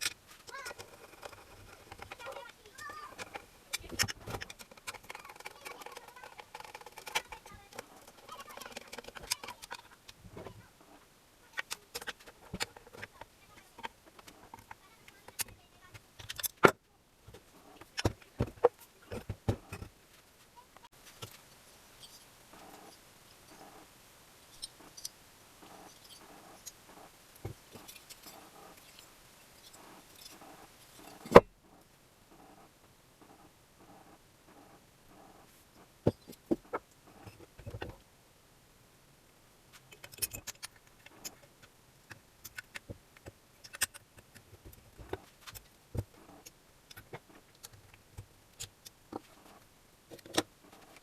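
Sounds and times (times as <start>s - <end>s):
metal tools clicking and knocking: 3.1s - 10.1s, 39.9s - 41.4s, 42.1s - 44.4s.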